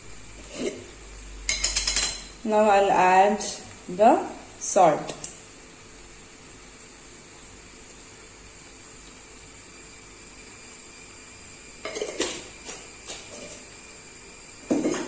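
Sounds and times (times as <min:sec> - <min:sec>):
food sizzling in a pan: 0:00.0 - 0:15.0
utensil scraping pan: 0:00.4 - 0:00.9, 0:11.8 - 0:13.6.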